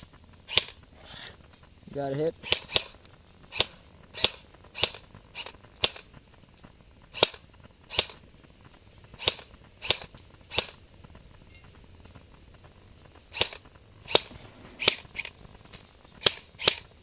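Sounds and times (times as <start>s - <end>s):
airsoft gun shots: 0.0s - 0.8s, 2.4s - 6.2s, 7.1s - 8.3s, 9.1s - 10.8s, 13.3s - 17.0s.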